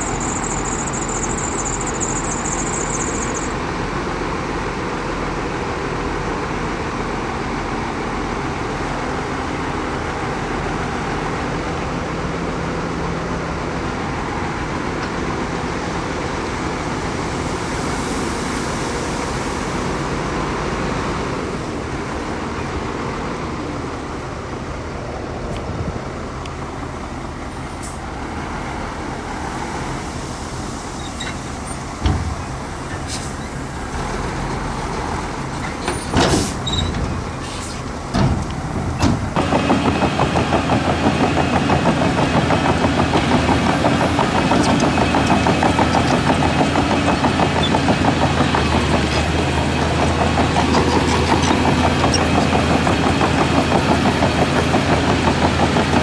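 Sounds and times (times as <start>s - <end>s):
diesel earthmoving machinery running: 0.0s - 56.0s
short thump: 32.0s - 33.4s.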